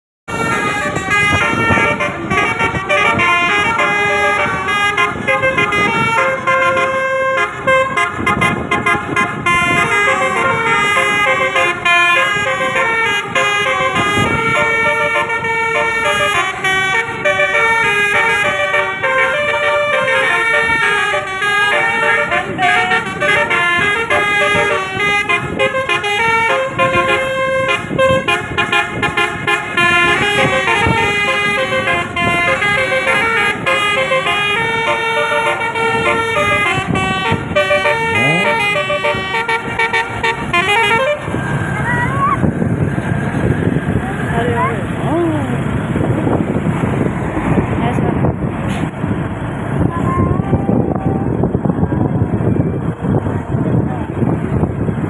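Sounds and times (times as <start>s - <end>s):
musical air horn playing a tune: 0.3s - 41.4s.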